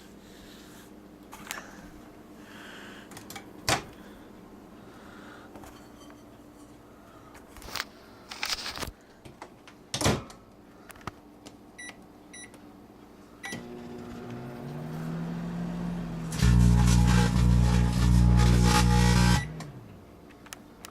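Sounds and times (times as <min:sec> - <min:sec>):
microwave oven humming: 0:11.8 - 0:20.2.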